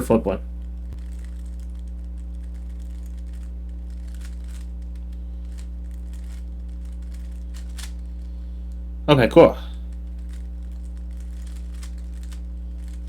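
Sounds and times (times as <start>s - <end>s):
steady electrical hum: 0.0s - 13.0s
plastic puzzle cube clicking: 2.2s - 8.0s, 10.2s - 13.0s.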